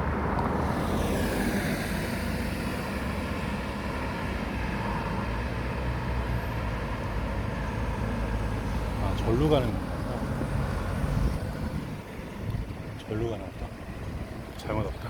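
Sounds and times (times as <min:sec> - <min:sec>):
vehicle passing by: 0:00.0 - 0:04.1
road traffic rumble and tyre hiss: 0:00.0 - 0:15.0.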